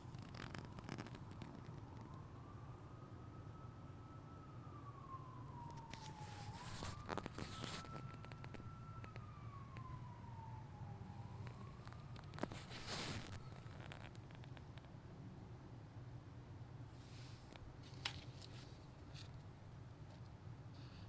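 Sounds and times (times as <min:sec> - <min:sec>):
faint siren wailing: 0:00.0 - 0:14.1, 0:17.0 - 0:20.9
handling clicks and rustles: 0:05.6 - 0:09.8, 0:11.4 - 0:14.7, 0:17.5 - 0:20.4.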